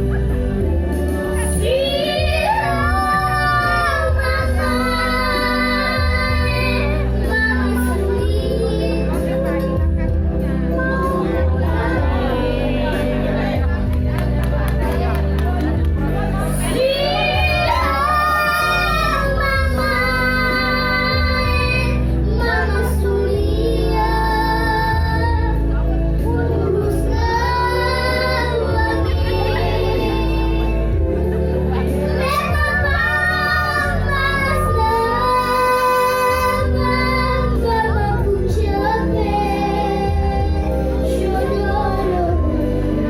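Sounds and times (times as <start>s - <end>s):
backing music: 0.0s - 43.0s
instrumental accompaniment with bass: 0.0s - 43.0s
girl singing: 1.4s - 9.8s, 16.5s - 25.6s, 26.3s - 31.0s, 32.0s - 43.0s.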